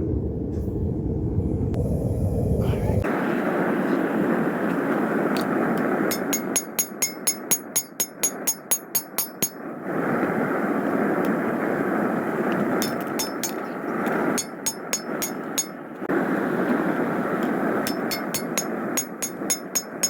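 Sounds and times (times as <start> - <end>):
forge roaring: 0.0 - 5.3
hammer striking steel on anvil: 6.1 - 9.6, 12.8 - 13.6, 14.4 - 15.8, 17.8 - 20.0.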